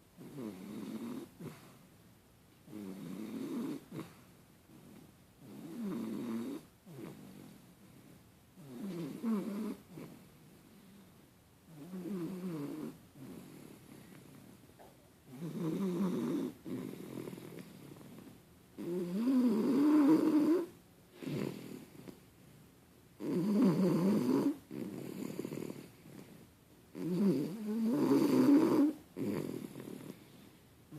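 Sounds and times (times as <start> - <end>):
person snoring: 27.0 - 30.2.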